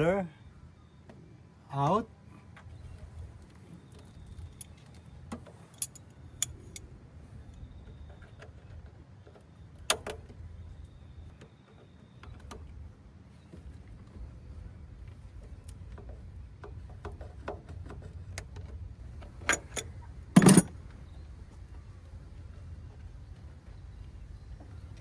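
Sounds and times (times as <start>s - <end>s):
metal tools clinking: 19.5s - 20.7s.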